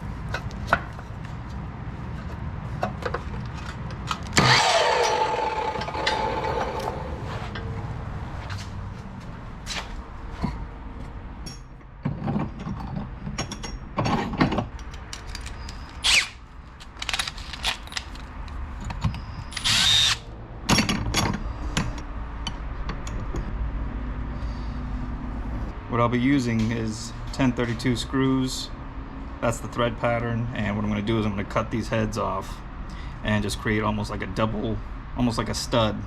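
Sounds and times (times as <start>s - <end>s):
power drill: 4.4s - 7.0s, 16.0s - 16.4s, 19.5s - 20.2s
tools and metal parts clicking: 11.4s - 23.5s.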